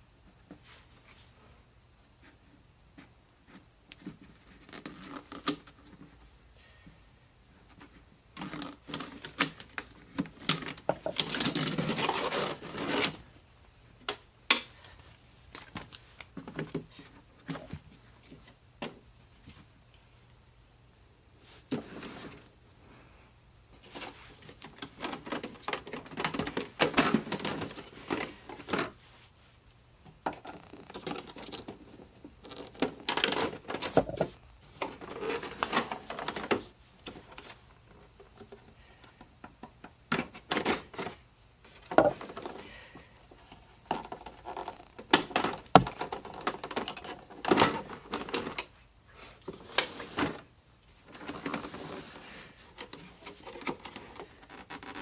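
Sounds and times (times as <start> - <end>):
plastic parts clicking and rattling: 7.8 - 13.2, 23.9 - 28.9, 30.1 - 42.6, 43.5 - 48.7, 52.7 - 55.0.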